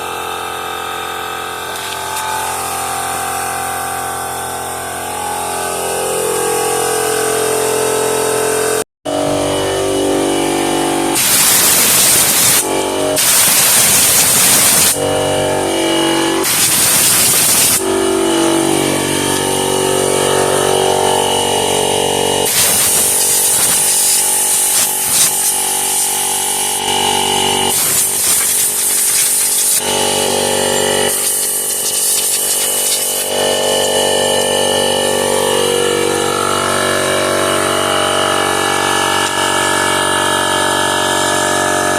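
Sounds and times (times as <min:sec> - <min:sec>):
air compressor running: 0:00.0 - 0:41.9
compressed air blasts: 0:11.2 - 0:15.0, 0:16.4 - 0:17.9, 0:22.4 - 0:26.9, 0:27.6 - 0:29.9, 0:31.0 - 0:33.5.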